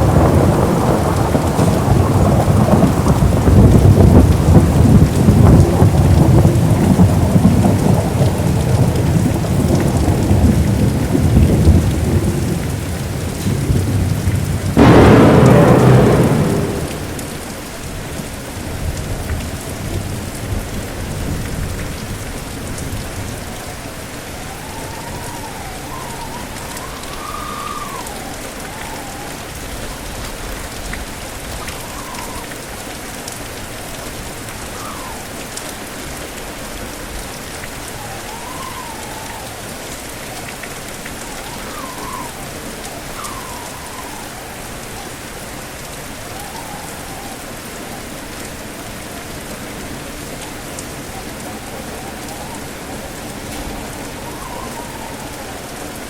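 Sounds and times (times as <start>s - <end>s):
low thunder rumble: 0.0s - 19.2s
heavy rain: 0.0s - 56.0s
strong wind whistling: 14.8s - 17.6s, 51.4s - 56.0s.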